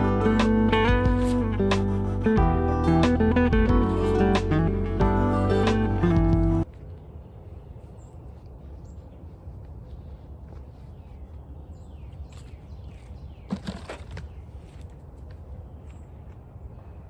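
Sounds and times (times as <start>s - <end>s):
steady low rumble: 0.0s - 11.4s.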